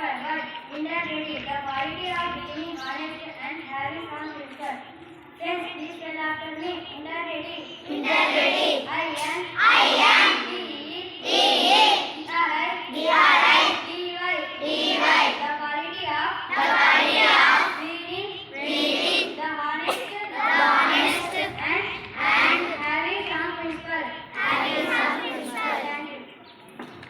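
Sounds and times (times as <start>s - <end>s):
children singing: 7.9s - 8.9s, 9.6s - 12.3s, 12.9s - 15.6s, 16.5s - 22.9s, 24.4s - 26.1s.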